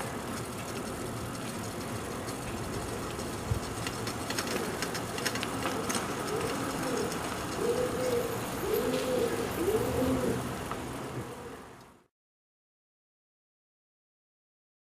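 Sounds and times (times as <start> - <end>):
steady background noise: 0.0 - 12.1
pigeon cooing: 4.4 - 10.6, 11.2 - 11.7.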